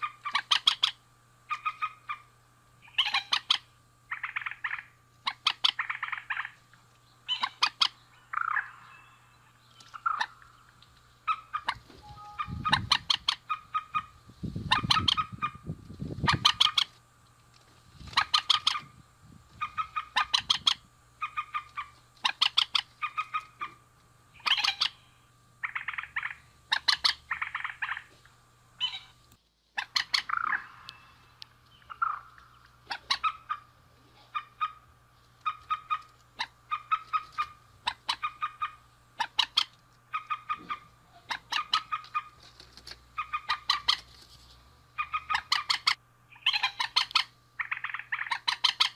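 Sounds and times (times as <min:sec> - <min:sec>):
faint hum: 0:00.0 - 0:48.9
deeper bird calls: 0:07.2 - 0:16.9, 0:19.6 - 0:23.8, 0:24.4 - 0:28.1, 0:29.8 - 0:42.4, 0:43.1 - 0:44.0, 0:45.0 - 0:48.9.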